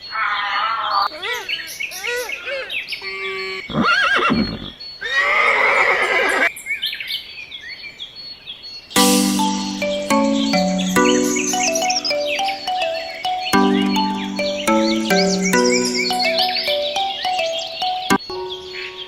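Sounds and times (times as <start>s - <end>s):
horse whinnying: 3.7s - 6.5s
background music: 9.0s - 19.0s
short chirping calls: 9.0s - 19.0s.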